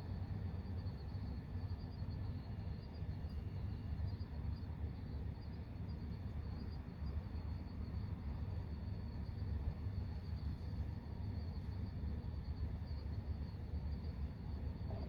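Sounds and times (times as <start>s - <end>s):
crickets chirping: 0.0s - 15.0s.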